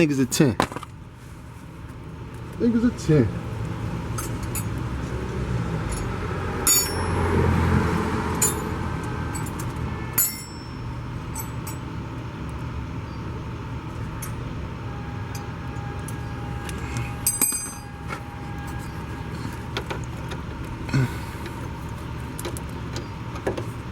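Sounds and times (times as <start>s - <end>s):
hand tools clinking against metal: 4.2s - 4.8s, 5.8s - 7.4s, 8.3s - 11.9s, 15.3s - 21.1s.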